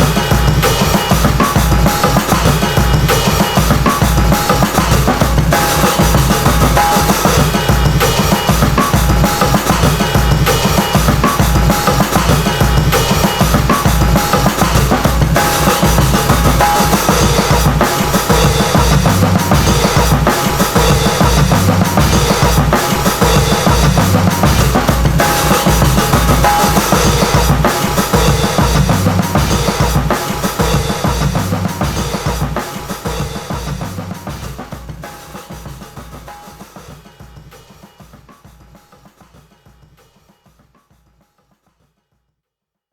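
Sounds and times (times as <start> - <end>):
hip-hop drum groove: 0.0 - 42.1
deep bass line: 14.8 - 17.8, 18.6 - 20.0, 20.9 - 22.5, 23.4 - 27.4, 28.4 - 29.6, 31.2 - 32.0.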